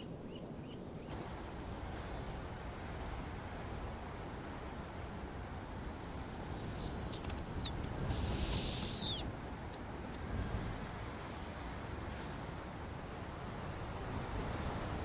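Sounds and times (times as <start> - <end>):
low wind rumble: 0.0 - 15.0
owl screech calls: 6.4 - 9.2.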